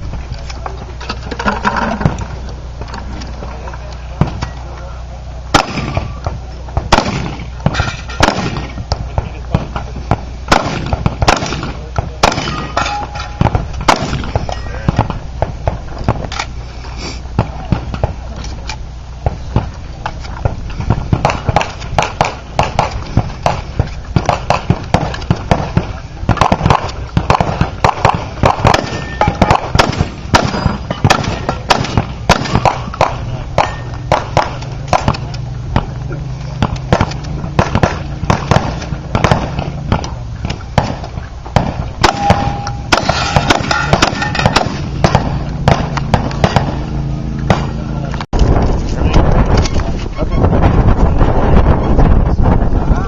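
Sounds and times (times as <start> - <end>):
gunshots: 5.5 - 16.5, 17.4 - 18.2, 20.4 - 48.0.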